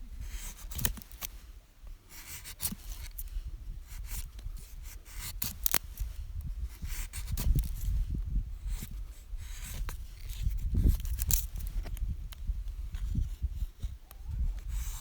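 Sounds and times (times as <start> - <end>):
rustling and scraping of handling: 0.0 - 15.0.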